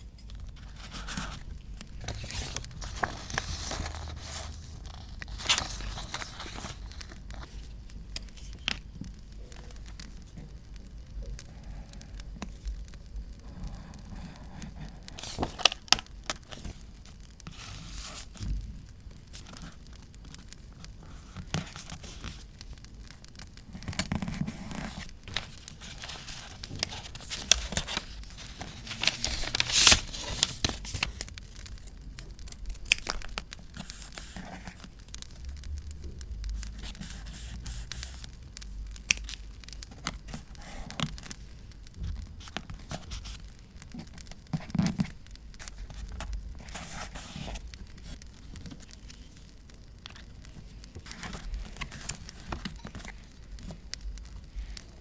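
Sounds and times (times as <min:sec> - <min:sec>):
paper tearing and crinkling: 0:00.6 - 0:07.7, 0:23.8 - 0:31.7
campfire crackling: 0:25.1 - 0:37.0, 0:45.2 - 0:55.0.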